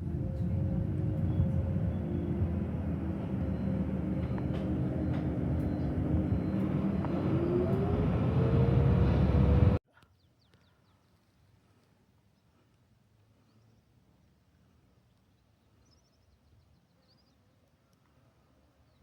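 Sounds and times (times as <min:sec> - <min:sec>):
vehicle engine rumbling: 0:00.0 - 0:09.8.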